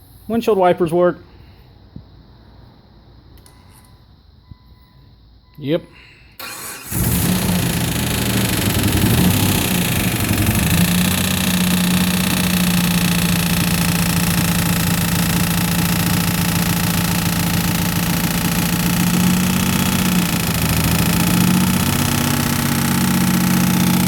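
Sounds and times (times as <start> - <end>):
car engine idling: 6.4 - 24.0.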